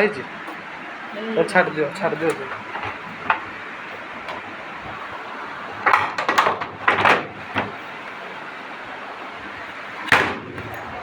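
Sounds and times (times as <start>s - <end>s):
steady background hiss: 0.0s - 5.9s
sharp knocks and clatters: 2.4s - 3.5s, 5.8s - 7.8s.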